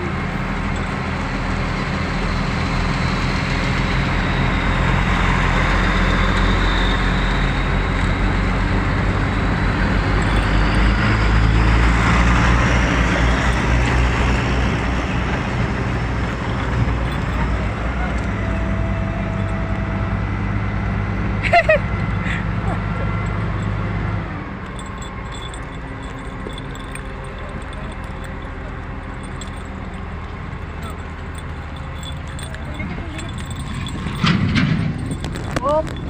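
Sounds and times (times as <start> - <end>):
large diesel engine running: 0.0 - 36.0.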